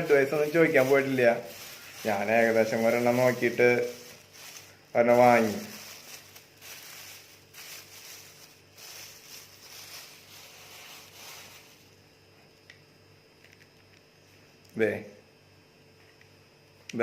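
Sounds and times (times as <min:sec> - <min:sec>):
packaging rustling: 0:00.0 - 0:12.0.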